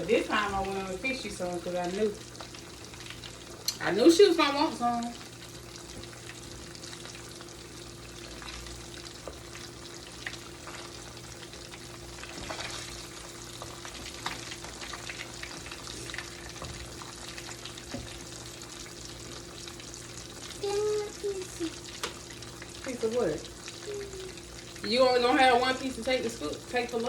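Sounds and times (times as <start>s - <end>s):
food sizzling in a pan: 0.0s - 27.0s
crackles and pops: 8.2s - 21.1s, 21.7s - 22.9s.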